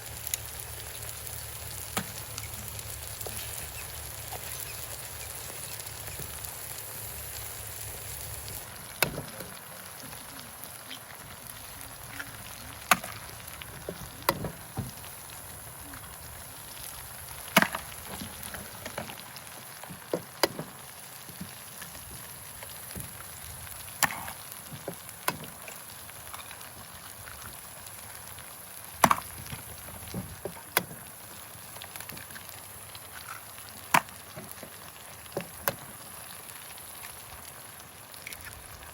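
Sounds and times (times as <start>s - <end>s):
faint steady hiss: 0.0s - 38.9s
sharp cracks and knocks: 9.0s - 9.6s, 17.5s - 19.2s, 24.0s - 25.8s, 29.0s - 31.0s, 33.9s - 34.7s.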